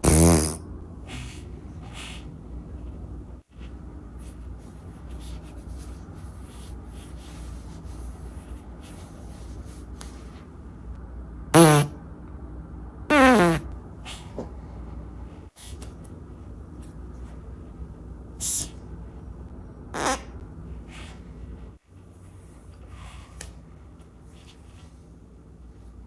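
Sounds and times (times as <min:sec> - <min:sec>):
farts: 0:00.0 - 0:00.6, 0:11.6 - 0:12.0, 0:13.1 - 0:13.8, 0:20.0 - 0:20.3.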